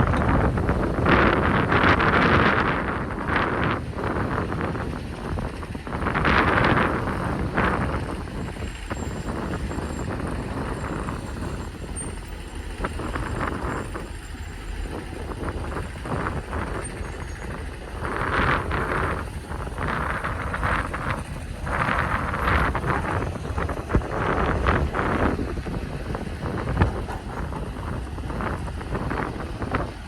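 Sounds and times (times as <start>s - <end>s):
excavator diesel engine: 0.0s - 30.0s
wind buffeting microphone: 0.0s - 30.0s.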